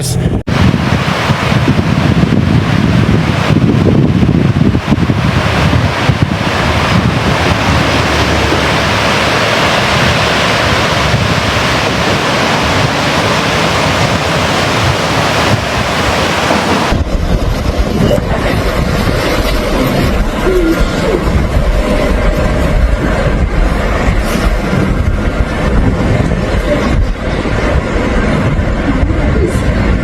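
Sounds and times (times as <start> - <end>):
low rumbling: 0.0 - 30.0
river water roaring: 0.0 - 30.0
wind buffeting microphone: 0.0 - 30.0.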